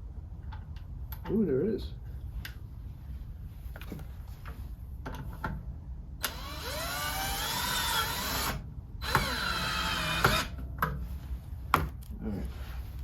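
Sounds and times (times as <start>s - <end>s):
power drill whining: 6.2s - 10.6s.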